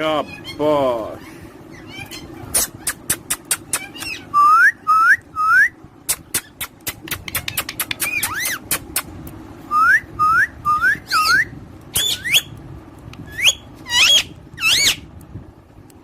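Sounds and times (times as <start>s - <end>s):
parrot whistling: 3.6s - 5.8s, 7.3s - 8.7s, 9.7s - 12.5s, 13.3s - 15.0s.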